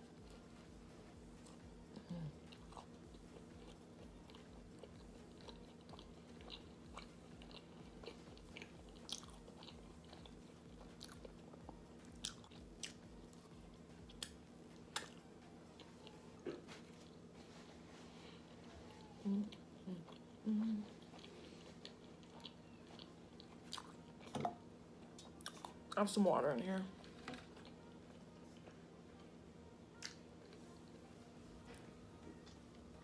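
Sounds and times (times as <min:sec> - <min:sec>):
steady low hum: 0:00.0 - 0:33.0
person chewing food: 0:00.1 - 0:24.4, 0:25.0 - 0:25.9.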